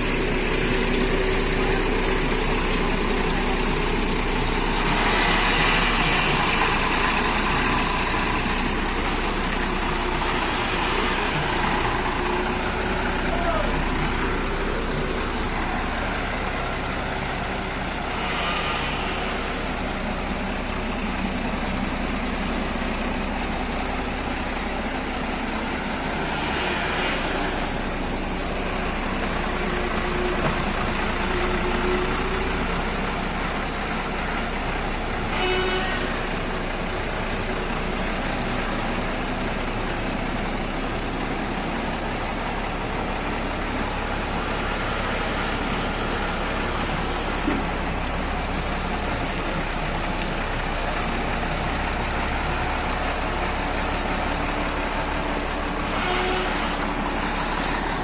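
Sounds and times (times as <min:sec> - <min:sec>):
road noise: 0:00.0 - 0:58.0
truck engine running: 0:00.0 - 0:58.0
short horn toots: 0:35.3 - 0:36.4, 0:55.9 - 0:57.0.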